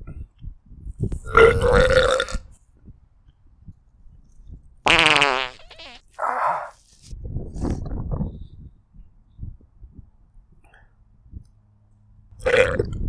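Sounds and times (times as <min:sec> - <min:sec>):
person farting: 0:01.3 - 0:02.5, 0:04.9 - 0:06.4.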